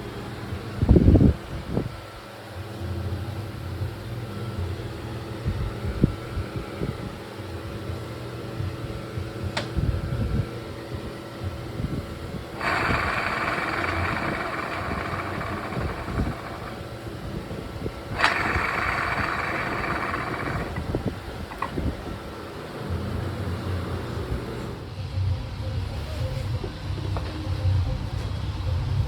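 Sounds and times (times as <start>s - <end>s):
scooter engine running: 12.4s - 24.9s.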